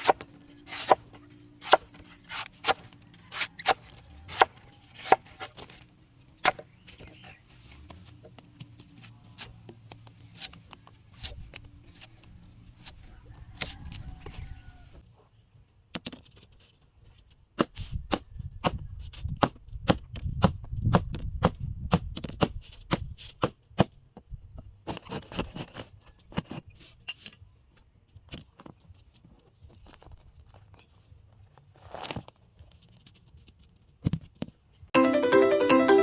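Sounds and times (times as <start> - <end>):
blade chopping coconut: 0.0 - 5.8, 6.4 - 7.2.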